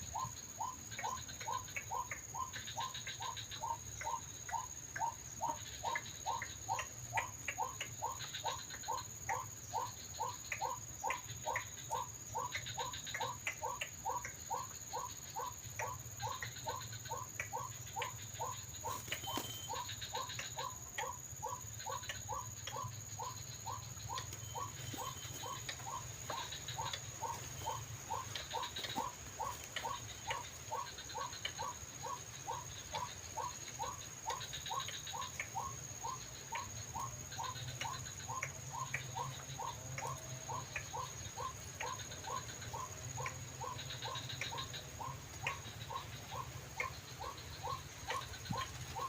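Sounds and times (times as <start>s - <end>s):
bird calling repeatedly: 0.0s - 49.0s
faint high whine: 18.8s - 20.0s.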